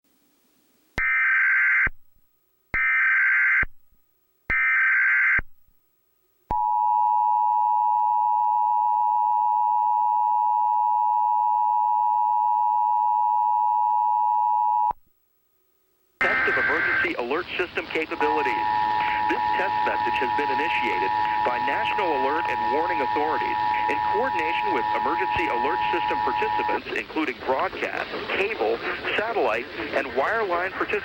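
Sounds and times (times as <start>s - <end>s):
digital data bursts: 16.2s - 31.0s
two-tone attention signal: 18.0s - 26.8s.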